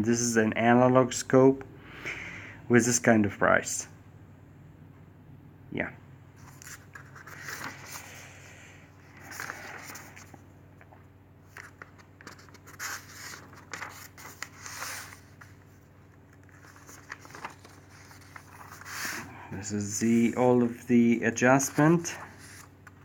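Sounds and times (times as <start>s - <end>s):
faint steady hum: 0.0s - 23.0s
paper pages rustling: 6.4s - 8.3s, 9.0s - 10.4s, 11.4s - 23.0s.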